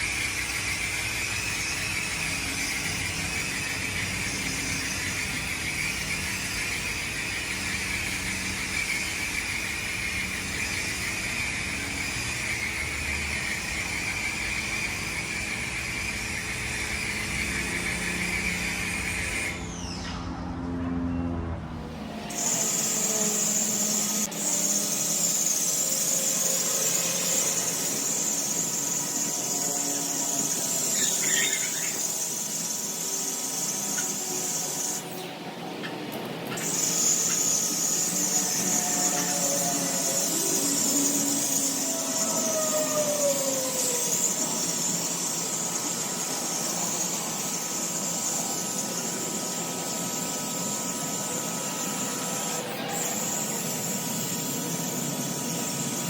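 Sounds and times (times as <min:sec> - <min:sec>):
pressure washer spray hiss: 0:22.3 - 0:35.3, 0:36.6 - 0:56.0.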